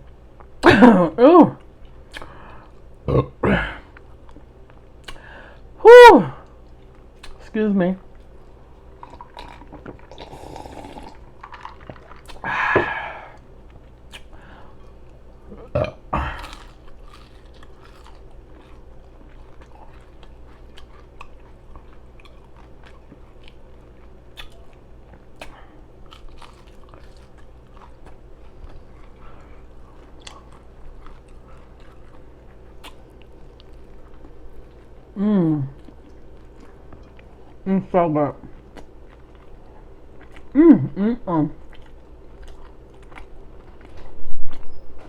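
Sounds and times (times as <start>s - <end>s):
wet open-mouth chewing: 1.6s - 3.0s, 6.4s - 7.4s, 8.1s - 37.6s, 38.4s - 40.6s, 41.6s - 44.8s
small mouth clicks: 2.1s - 2.4s, 5.0s - 5.3s, 6.8s - 7.4s, 14.1s - 14.4s, 24.3s - 24.7s, 32.8s - 33.0s
loud bites crunching: 16.2s - 21.6s.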